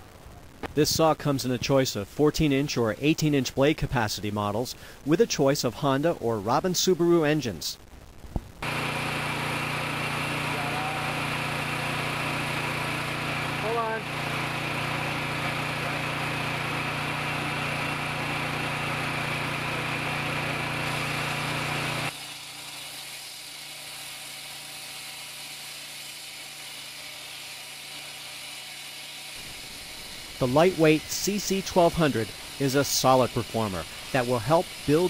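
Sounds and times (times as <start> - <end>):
concrete saw engine running: 8.6 - 35.0.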